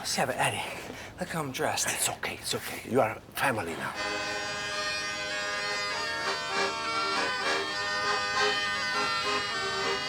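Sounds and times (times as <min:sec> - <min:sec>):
instrumental music with held notes: 0:04.0 - 0:10.0.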